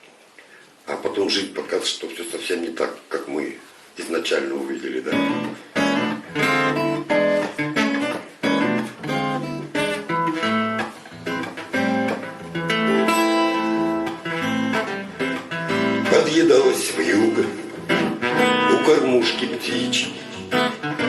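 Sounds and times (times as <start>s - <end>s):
acoustic guitar strumming chords: 5.1s - 21.0s.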